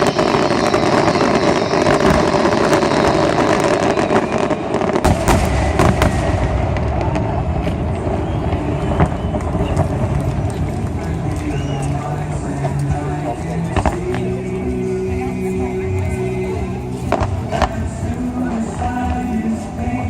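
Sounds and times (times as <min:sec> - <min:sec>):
fireworks sharp bangs: 0:00.0 - 0:14.4
deep rumble: 0:00.0 - 0:20.0
fireworks crackling: 0:00.0 - 0:20.0
faint music: 0:07.8 - 0:20.0.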